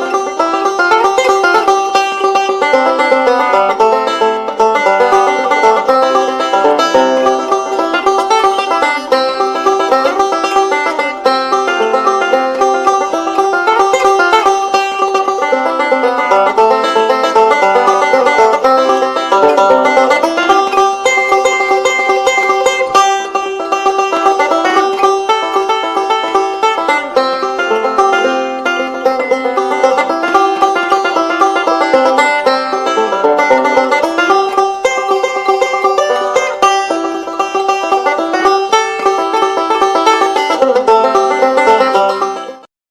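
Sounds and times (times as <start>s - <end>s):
bluegrass banjo music: 0.0s - 42.7s.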